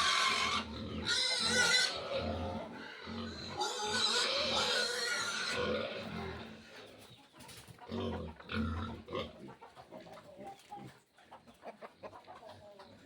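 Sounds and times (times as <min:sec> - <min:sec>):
piglets squealing: 0:00.0 - 0:02.6, 0:03.2 - 0:06.1
pig grunts: 0:00.0 - 0:06.8, 0:07.9 - 0:09.5.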